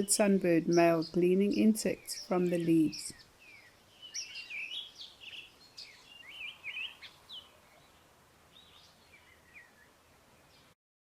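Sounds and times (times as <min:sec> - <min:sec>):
bird twittering: 0:00.0 - 0:07.9
faint outdoor hiss: 0:00.0 - 0:10.8.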